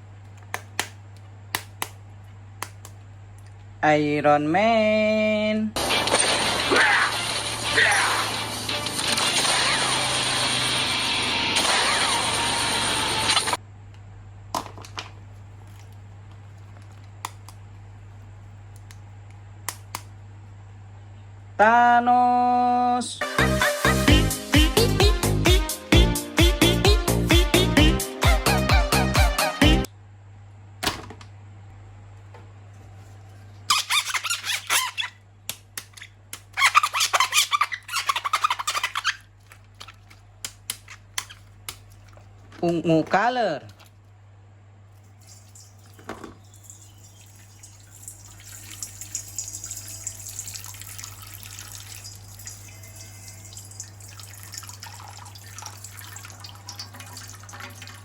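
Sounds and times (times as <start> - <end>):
faint steady hum: 12.3 - 23.2, 39.2 - 58.0
plastic crinkling and squeaking: 33.3 - 35.2, 35.9 - 42.8.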